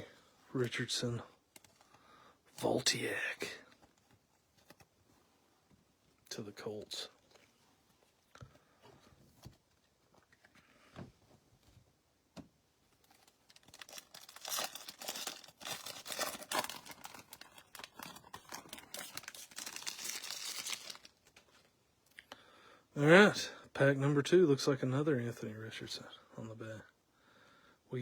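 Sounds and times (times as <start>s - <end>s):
card pack wrapper crinkling and tearing: 13.0s - 21.5s.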